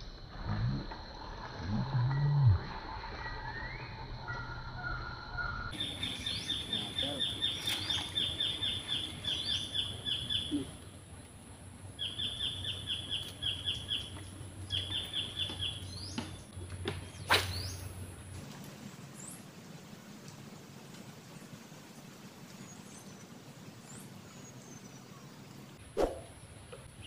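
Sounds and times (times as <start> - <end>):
bird chirping: 3.0 - 10.8, 12.0 - 17.9.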